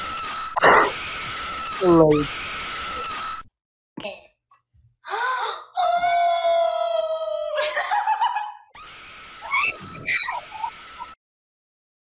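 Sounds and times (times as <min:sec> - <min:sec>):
person shrieking with laughter: 0:05.8 - 0:08.0, 0:09.4 - 0:10.7.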